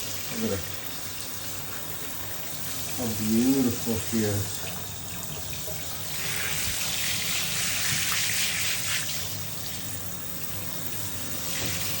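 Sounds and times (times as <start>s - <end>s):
tap water splashing and trickling: 4.2s - 9.8s, 10.4s - 12.0s.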